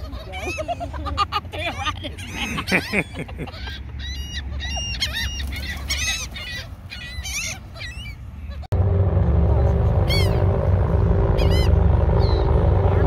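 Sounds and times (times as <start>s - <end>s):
seagulls calling: 0.0s - 8.7s, 9.9s - 13.0s
low steady rumble: 8.5s - 13.0s.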